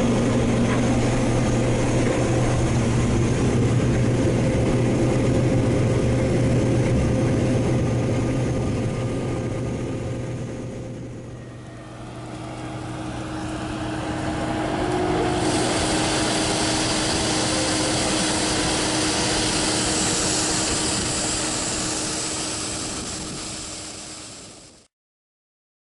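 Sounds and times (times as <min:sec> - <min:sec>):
heavy machinery engine humming: 0:00.0 - 0:24.8
hissing machine: 0:11.1 - 0:24.9.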